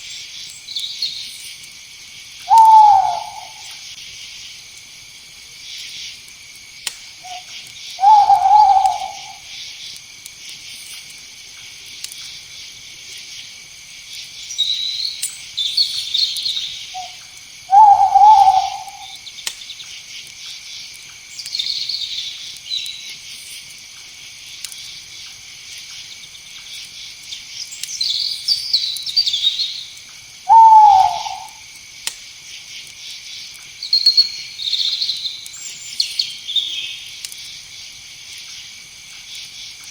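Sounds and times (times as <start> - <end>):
insect chorus: 0.0 - 39.9
high chirping calls: 2.5 - 3.7, 7.2 - 9.6, 17.7 - 19.4, 30.5 - 31.6
owl hooting: 2.5 - 3.7, 7.2 - 9.6, 16.9 - 19.2, 30.5 - 31.6.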